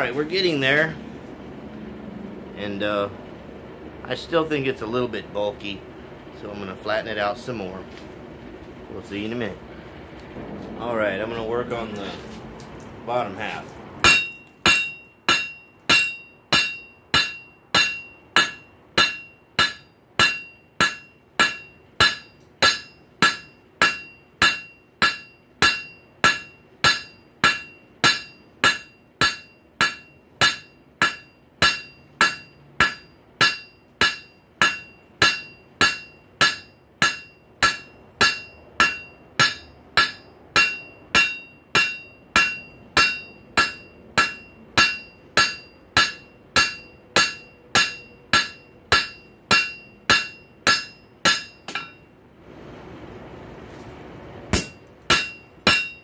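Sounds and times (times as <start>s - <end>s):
hammer striking metal on anvil: 14.0s - 52.1s, 54.5s - 56.0s.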